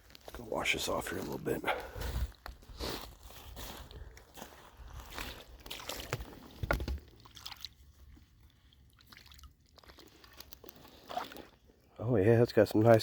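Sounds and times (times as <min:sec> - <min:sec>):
creek water splashing: 0:05.0 - 0:11.8.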